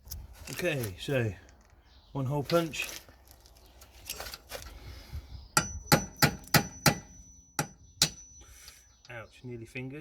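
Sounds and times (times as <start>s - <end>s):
hammer striking metal punch: 5.6s - 8.4s.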